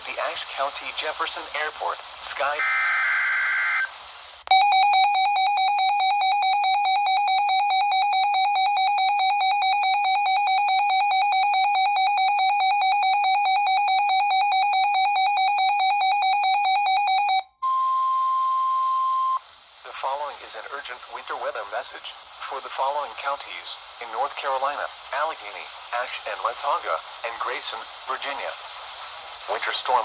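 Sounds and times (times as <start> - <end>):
steady attention tone: 4.5 - 19.4
warbling electronic alarm beep: 4.5 - 19.4.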